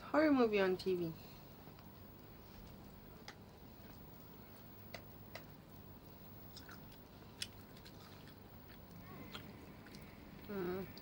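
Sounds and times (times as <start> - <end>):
soft chewing mouth sounds: 1.3 - 11.0.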